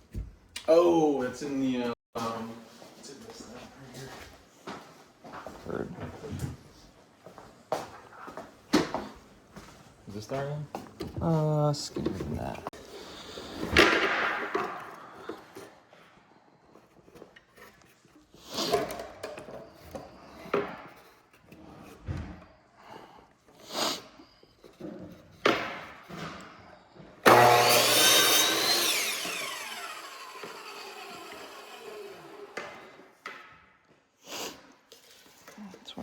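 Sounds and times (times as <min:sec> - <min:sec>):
power tool motor winding down: 0:27.2 - 0:33.0
wood and tools knocking: 0:27.3 - 0:33.6.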